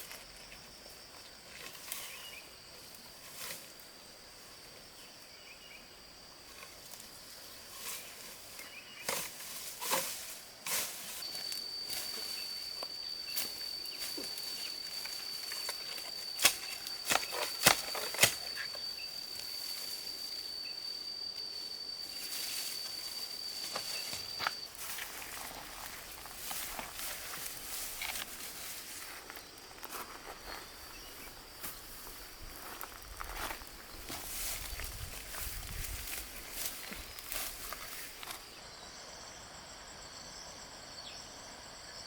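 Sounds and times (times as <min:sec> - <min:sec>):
insect trilling: 0:00.0 - 0:42.0.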